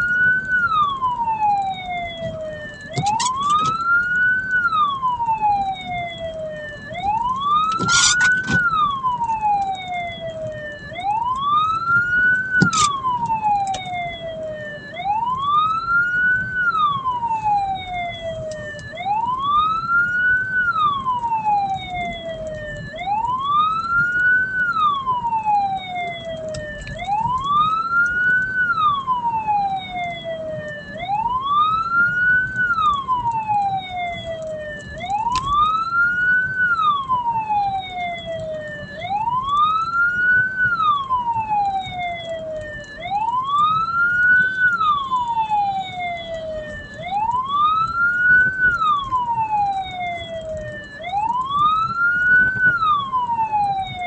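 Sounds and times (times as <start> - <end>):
siren wailing: 0.0 - 54.0
sharp clicks: 32.5 - 35.8.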